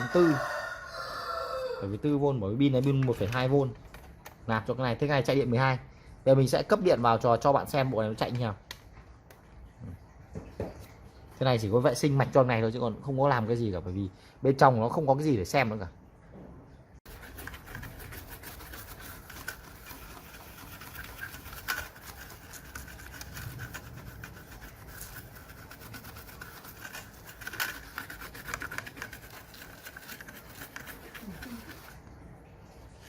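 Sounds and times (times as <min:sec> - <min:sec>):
brush scrubbing circuit board: 0:17.1 - 0:32.1.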